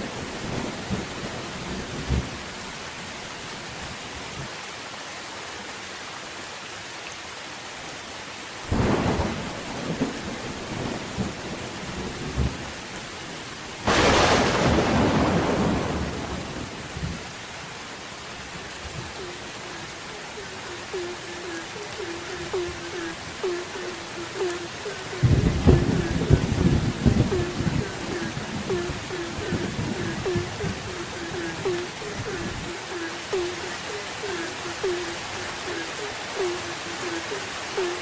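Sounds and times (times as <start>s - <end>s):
steady rain falling: 0.0s - 38.0s
thunder cracking and rumbling: 13.8s - 17.3s, 25.1s - 32.6s.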